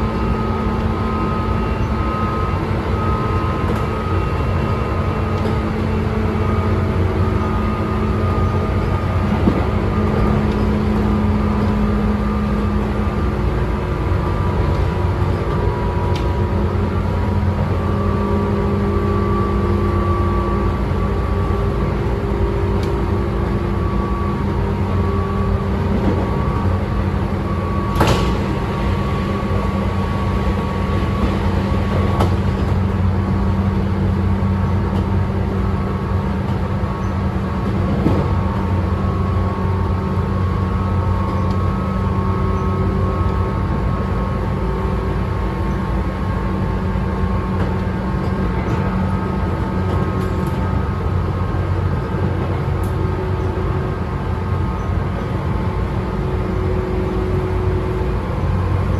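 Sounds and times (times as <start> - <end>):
drive equipment hum tones: 0.0 - 37.4
train running rumble: 0.0 - 58.9.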